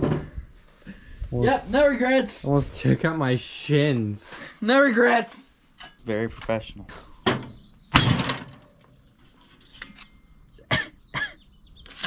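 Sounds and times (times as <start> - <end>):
person coughing: 10.7 - 11.4.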